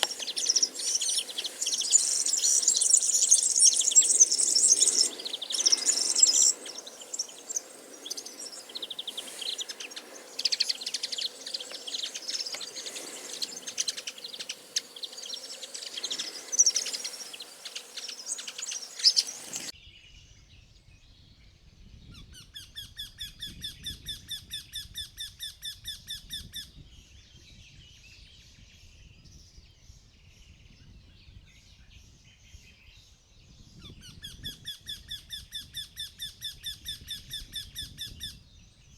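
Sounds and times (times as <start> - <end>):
birds chirping in chorus: 0.0 - 19.8.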